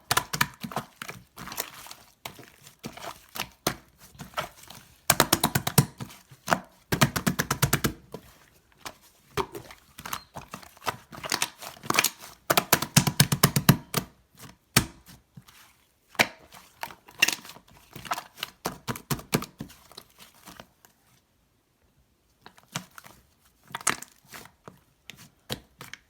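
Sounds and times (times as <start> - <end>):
slime squished by hand: 0.0 - 20.5.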